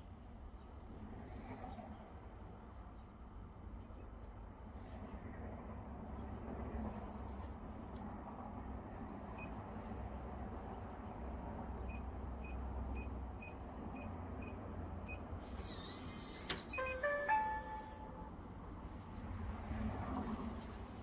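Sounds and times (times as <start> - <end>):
short high beeps: 16.6 - 18.4
rising chime tones: 16.8 - 18.3.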